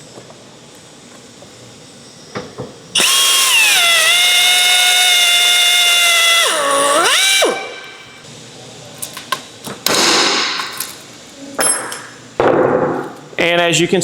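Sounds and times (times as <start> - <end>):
hand drill whining: 3.0 - 7.9.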